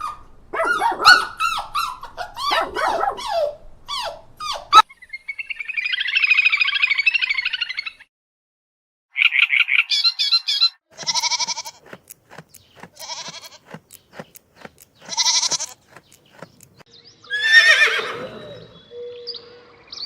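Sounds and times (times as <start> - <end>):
goats bleating: 11.0 - 14.0, 14.6 - 16.2
regular ticking beat: 11.6 - 16.8
horse whinny: 17.3 - 18.8.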